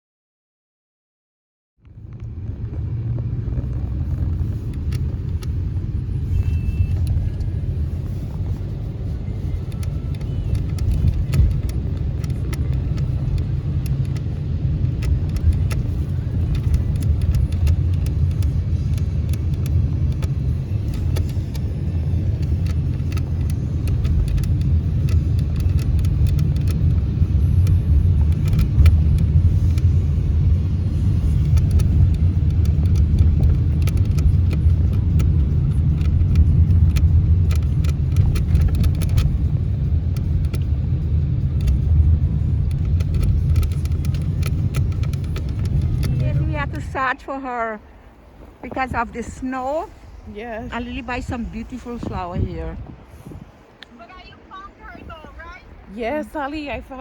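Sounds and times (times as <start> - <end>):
car engine and road rumble: 1.8 - 57.0
faint clicks: 6.2 - 46.9, 53.8 - 54.0.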